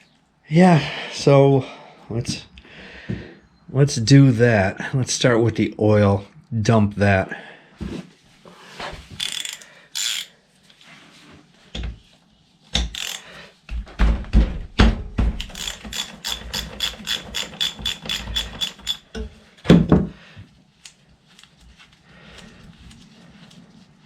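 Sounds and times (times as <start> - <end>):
ratchet wrench clicking: 9.2 - 10.3, 12.9 - 13.3, 15.4 - 19.1
wrench knocks and clunks: 12.8 - 20.1.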